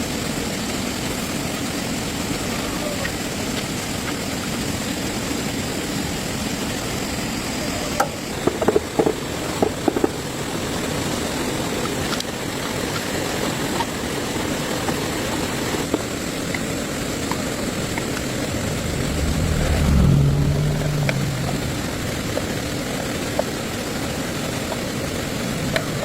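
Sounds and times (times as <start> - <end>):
tractor engine running: 17.3 - 25.2.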